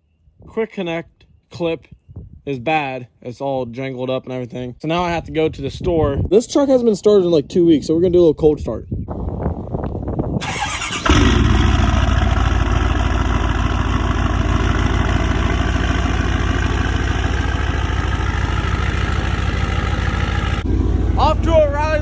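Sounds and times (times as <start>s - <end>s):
truck engine cranking and idling: 10.4s - 22.0s.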